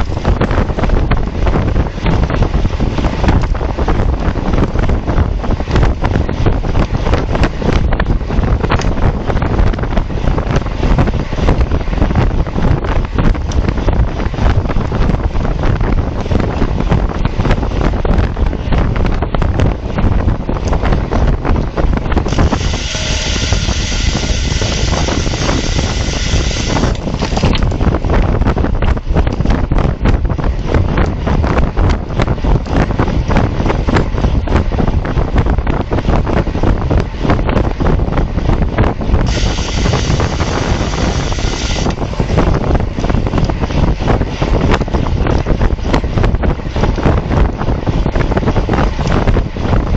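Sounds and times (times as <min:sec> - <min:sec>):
wind buffeting microphone: 0:00.0 - 0:49.9
steady higher buzz: 0:22.2 - 0:27.3, 0:39.2 - 0:42.4.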